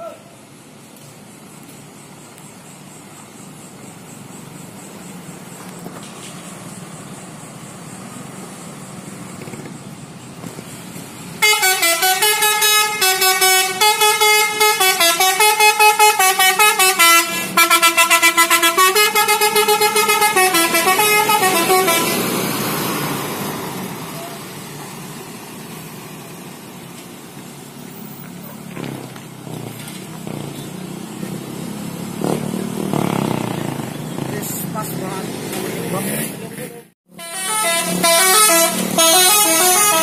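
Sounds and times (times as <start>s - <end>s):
low traffic rumble: 0.0s - 40.0s
multi-tone musical bus horn: 11.4s - 23.0s, 37.1s - 40.0s.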